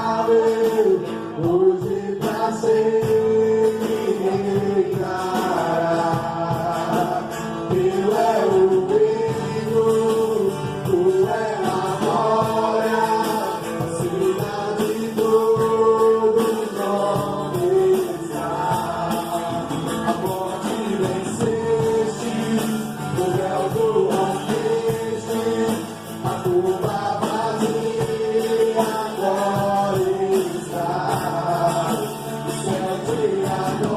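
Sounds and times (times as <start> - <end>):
band playing with singing: 0.0 - 33.9
percussion: 0.0 - 33.9.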